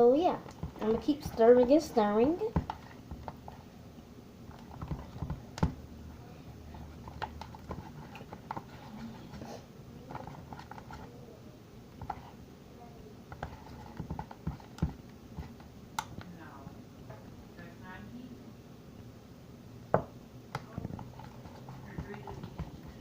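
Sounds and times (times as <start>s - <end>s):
utensil stirring slime in a bowl: 0.0s - 3.8s, 4.4s - 5.8s, 6.5s - 11.2s, 11.9s - 12.4s, 13.3s - 16.2s, 20.6s - 23.0s.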